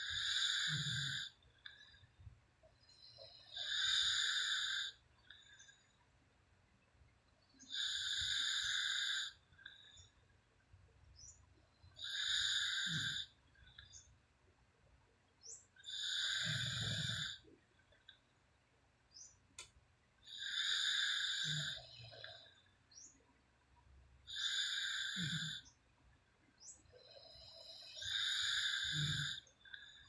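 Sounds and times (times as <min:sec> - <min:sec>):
woman snoring: 0:00.0 - 0:01.4, 0:03.5 - 0:05.0, 0:07.7 - 0:09.4, 0:12.0 - 0:13.3, 0:15.9 - 0:17.4, 0:20.3 - 0:22.2, 0:24.3 - 0:25.6, 0:27.2 - 0:29.9.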